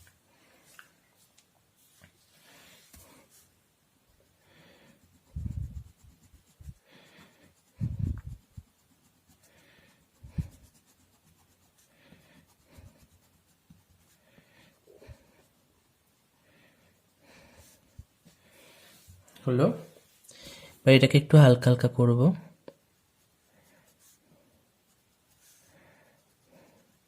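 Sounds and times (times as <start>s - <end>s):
scratching strokes on paper: 0.0s - 19.3s, 22.5s - 27.0s
deep puffs or bumps: 7.8s - 8.6s.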